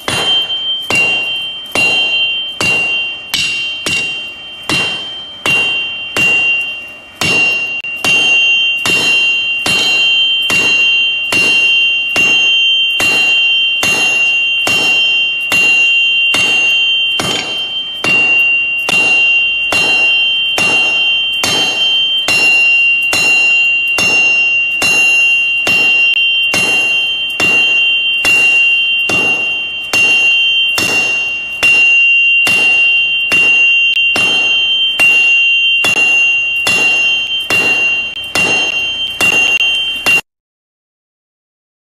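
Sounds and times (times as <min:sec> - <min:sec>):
hammer striking steel anvil: 0:00.0 - 0:40.3.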